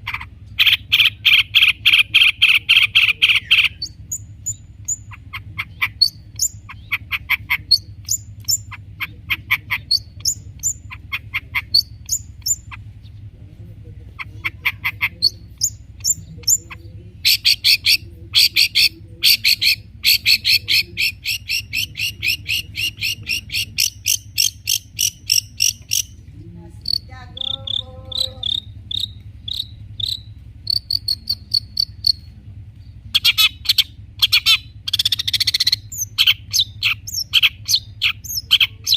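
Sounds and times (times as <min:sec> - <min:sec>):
bird song with chips and trills: 0:00.0 - 0:13.3, 0:14.4 - 0:26.2, 0:26.8 - 0:38.9
steady low hum: 0:00.0 - 0:38.9.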